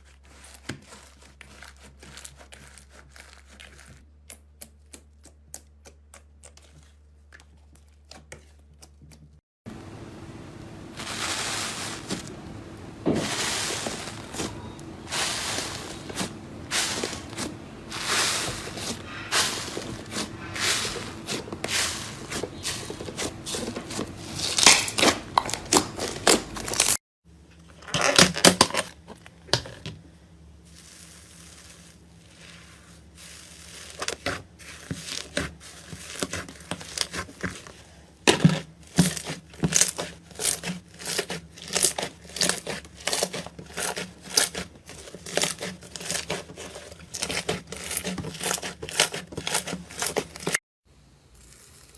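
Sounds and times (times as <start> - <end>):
slime squeezed crunching and crackling: 13.8 - 27.0, 38.9 - 50.6.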